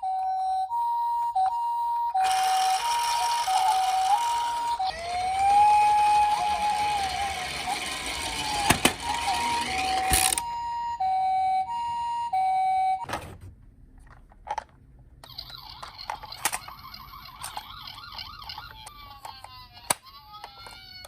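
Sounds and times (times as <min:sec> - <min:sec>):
electronic two-tone siren: 0:00.0 - 0:13.0.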